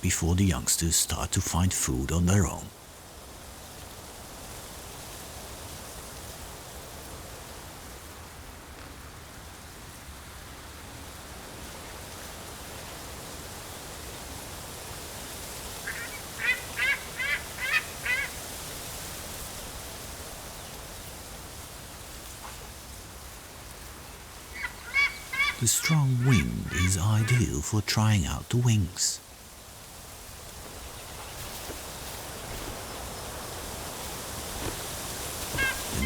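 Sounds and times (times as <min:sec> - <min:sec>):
eagle yelping calls: 0:15.9 - 0:18.4, 0:24.5 - 0:25.6, 0:35.5 - 0:36.0.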